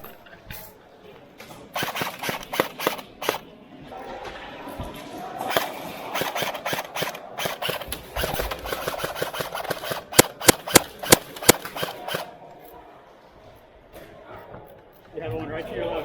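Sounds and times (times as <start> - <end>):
airsoft gun shots: 1.8 - 3.4, 5.5 - 12.3.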